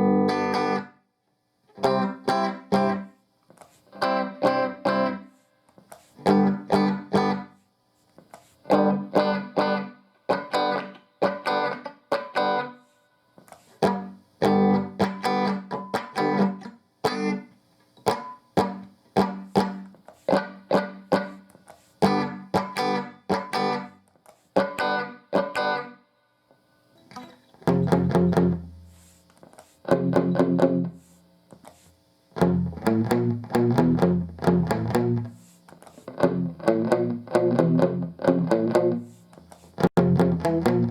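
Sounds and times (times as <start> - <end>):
electric guitar chord stabs: 27.0 - 28.8, 32.4 - 35.3, 36.1 - 39.1, 39.8 - 40.9.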